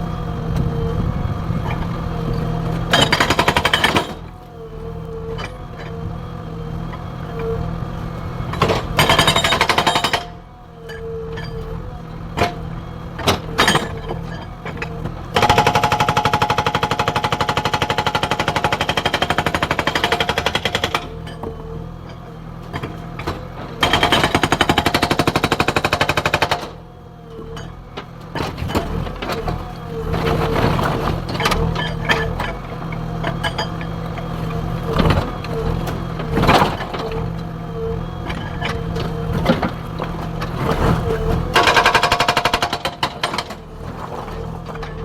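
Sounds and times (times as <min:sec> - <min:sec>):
diesel engine running: 0:00.0 - 0:45.0
hydraulic breaker hammering: 0:02.9 - 0:04.3, 0:08.5 - 0:10.4, 0:15.4 - 0:21.5, 0:23.8 - 0:26.8, 0:41.5 - 0:43.7.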